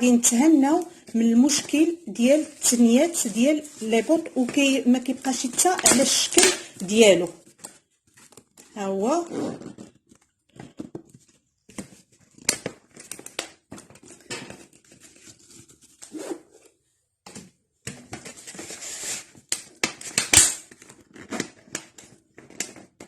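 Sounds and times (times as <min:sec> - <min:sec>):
plastic bottles crinkling: 0:00.0 - 0:08.9.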